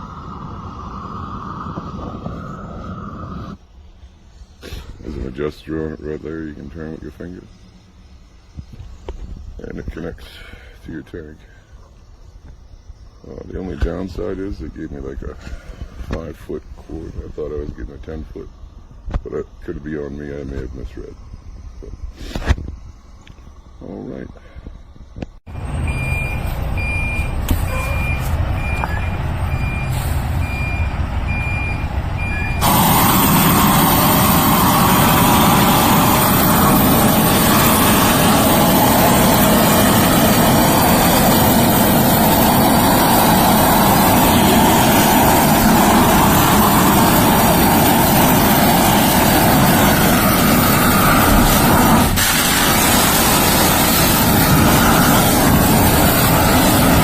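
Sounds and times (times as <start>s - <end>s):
torch flame rushing: 0.0s - 3.8s, 27.4s - 57.0s.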